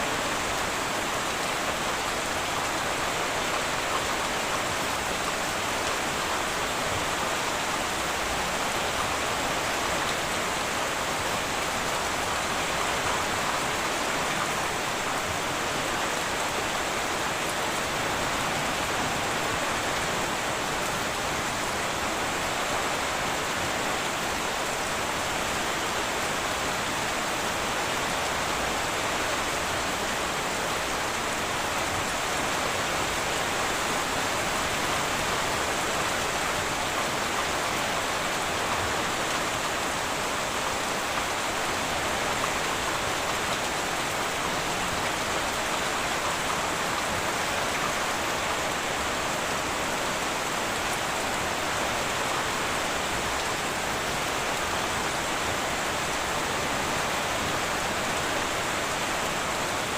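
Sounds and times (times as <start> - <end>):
heavy rain on a tin roof: 0.0 - 59.9.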